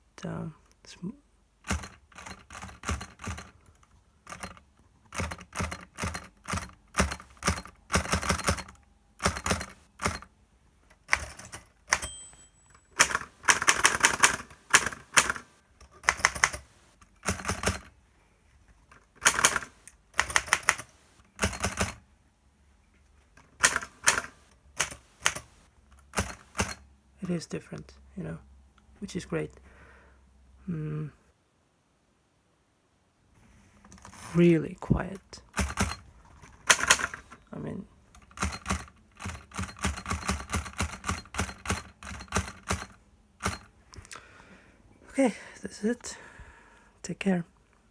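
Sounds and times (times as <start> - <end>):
typewriter keystrokes: 1.7 - 3.6, 4.3 - 10.3, 11.0 - 17.9, 19.2 - 22.0, 23.6 - 26.8, 35.6 - 37.4, 38.2 - 43.7.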